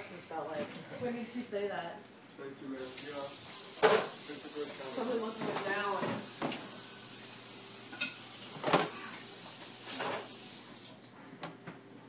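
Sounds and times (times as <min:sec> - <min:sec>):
steady hiss: 0:02.6 - 0:05.4.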